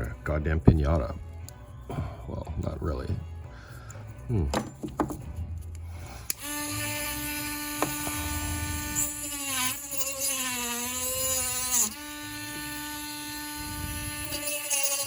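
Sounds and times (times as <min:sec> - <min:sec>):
rotary tool cutting plastic: 0:06.2 - 0:15.0.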